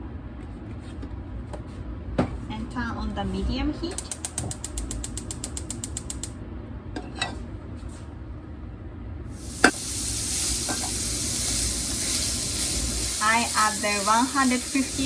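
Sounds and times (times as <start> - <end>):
gas stove igniter clicking: 3.9 - 6.4
pan sizzling: 9.3 - 15.0.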